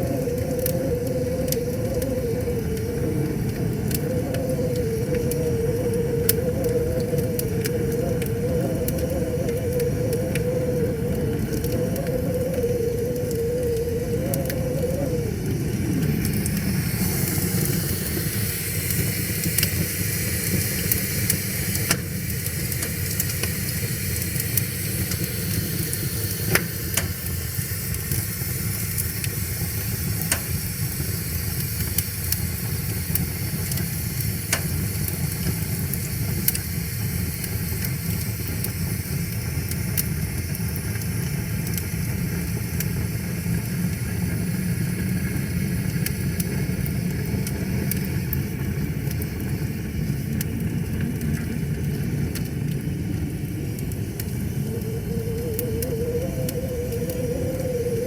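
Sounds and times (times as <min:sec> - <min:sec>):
wavering tone sliding down: 0:00.0 - 0:18.2, 0:53.2 - 0:58.0
wood fire crackling and popping: 0:00.0 - 0:58.0.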